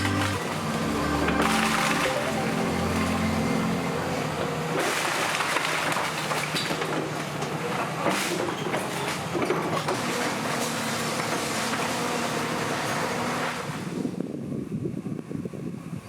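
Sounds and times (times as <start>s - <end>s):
heavy machinery engine hum: 0.0s - 8.0s
machinery rattling clatter: 0.0s - 11.9s.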